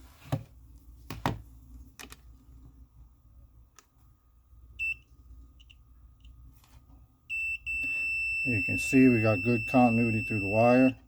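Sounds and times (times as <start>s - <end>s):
continuity tester beep: 4.8s - 5.8s, 7.3s - 11.0s.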